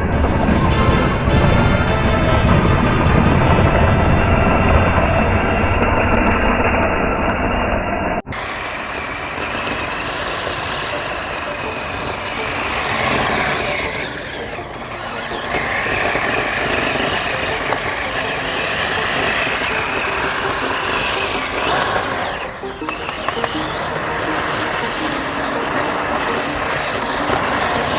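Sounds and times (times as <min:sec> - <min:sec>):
toy car electric motor whining: 0:08.3 - 0:27.9.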